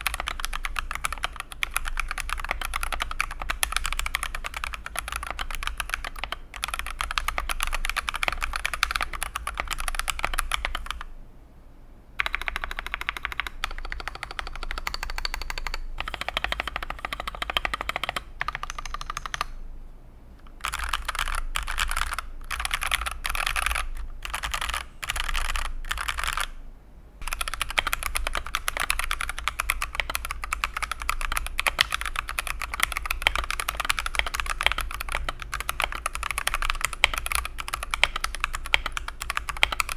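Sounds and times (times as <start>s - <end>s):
fast typing on mechanical keyboard: 0.0s - 11.1s, 12.2s - 19.6s, 20.6s - 26.6s, 27.2s - 39.9s.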